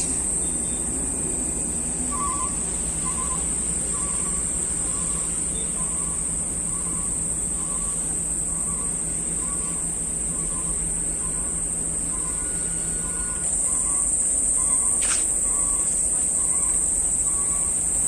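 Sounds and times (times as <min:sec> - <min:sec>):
high-pitched insect drone: 0:00.0 - 0:18.0.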